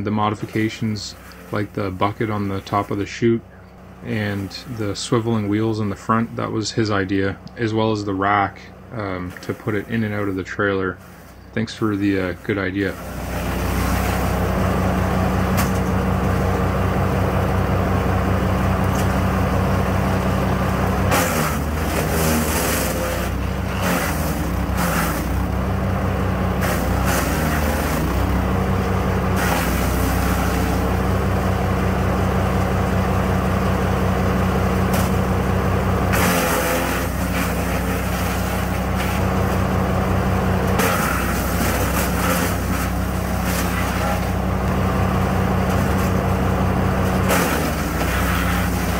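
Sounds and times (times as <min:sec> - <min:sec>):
wood chipper engine running: 0:00.0 - 0:48.9
branches being chipped: 0:20.6 - 0:25.5, 0:26.6 - 0:28.5, 0:36.1 - 0:39.2, 0:40.7 - 0:44.9, 0:47.0 - 0:48.9.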